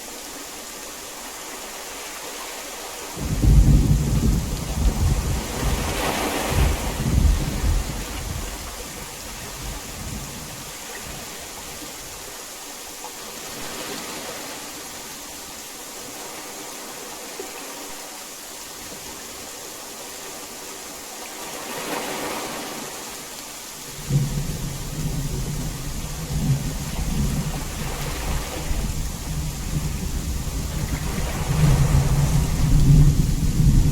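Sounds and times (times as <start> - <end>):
heavy rain falling: 0.0 - 16.4, 18.5 - 33.9
thunderclap: 3.2 - 8.8, 24.0 - 33.9
thunder rumble: 3.2 - 11.3, 23.9 - 33.9.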